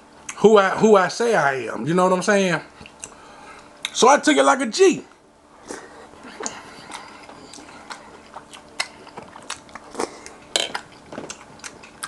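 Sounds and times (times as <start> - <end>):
person chewing food: 5.6 - 12.0.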